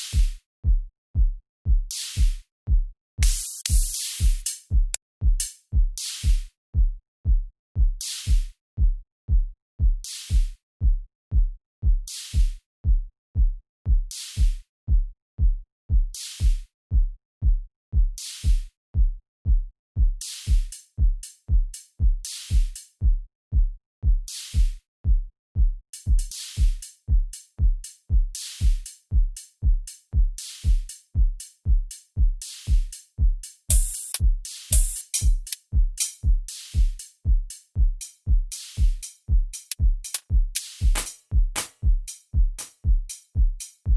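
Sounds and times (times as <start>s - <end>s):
kick drum beat: 0.1s - 43.9s
higher percussion hits: 3.2s - 5.5s, 33.7s - 37.1s, 38.0s - 43.8s
snappy clap hits: 3.2s - 5.6s, 32.4s - 43.8s.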